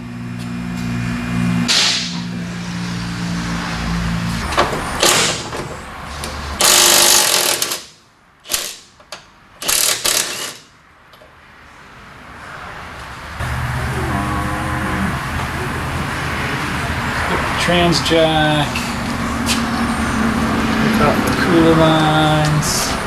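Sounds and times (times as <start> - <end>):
impact wrench rattling: 6.6 - 8.9, 9.6 - 10.7
steady low hum: 13.4 - 21.8.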